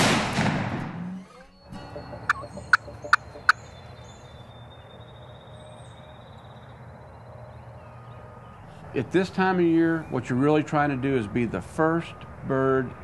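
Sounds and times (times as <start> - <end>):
faint songbird chirps: 1.2 - 13.0
turkey calls: 1.3 - 3.8.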